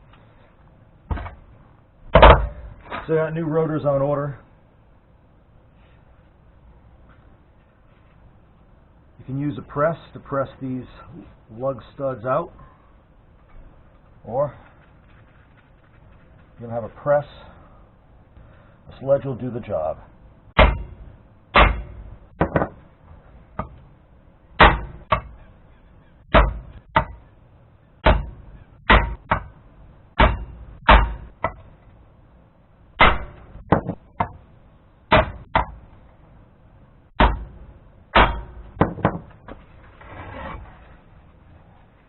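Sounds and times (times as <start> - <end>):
sledgehammer striking metal: 2.1 - 2.9, 20.6 - 22.8, 24.6 - 25.4, 26.3 - 27.2, 28.0 - 31.7, 33.0 - 34.4, 35.1 - 35.9, 37.2 - 39.3
rustling scrape: 7.1 - 8.3, 13.4 - 17.0, 39.6 - 42.0.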